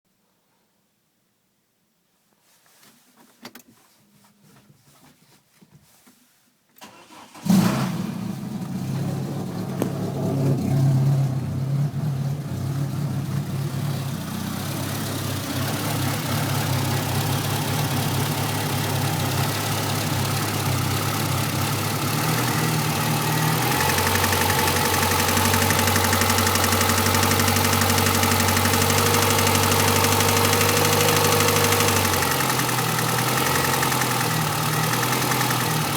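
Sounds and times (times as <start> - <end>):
car engine idling: 7.0 - 35.9
starter cranking: 16.1 - 35.9.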